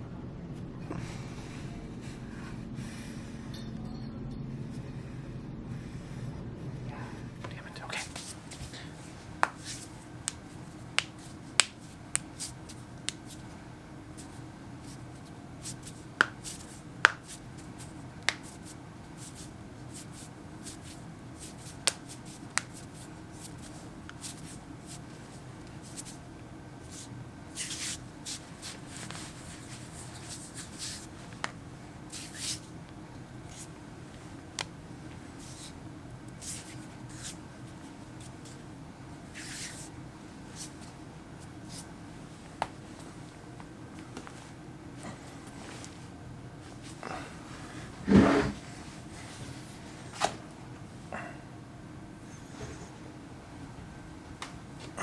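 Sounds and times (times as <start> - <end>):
knuckles cracking: 8.0 - 13.4, 15.7 - 17.4, 20.1 - 24.5
hands rubbing: 8.0 - 32.8, 33.4 - 38.7, 39.3 - 43.2.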